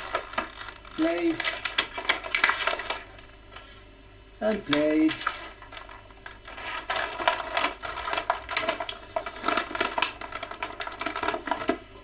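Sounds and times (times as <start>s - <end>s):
plastic packaging clicks and crinkles: 0.0s - 3.7s, 4.5s - 11.8s.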